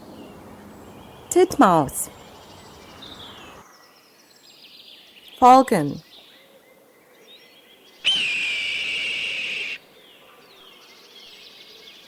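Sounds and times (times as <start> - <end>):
small birds chirping: 0.0 - 12.0
falcon screaming: 8.0 - 9.8.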